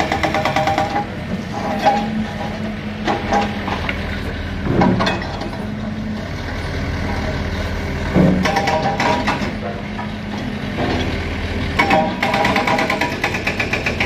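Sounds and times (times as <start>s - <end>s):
constant low hum: 0.0s - 13.7s
engine rumble: 0.0s - 14.0s.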